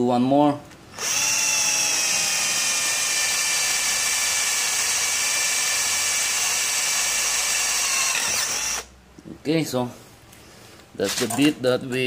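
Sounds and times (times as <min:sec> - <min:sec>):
electric drill boring through steel: 0:00.9 - 0:08.9.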